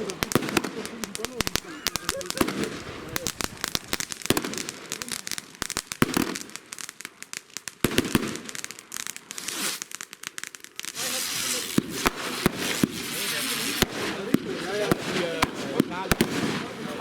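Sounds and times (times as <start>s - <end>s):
firework bangs and crackles: 0.0s - 17.0s
firework hissing: 0.0s - 17.0s.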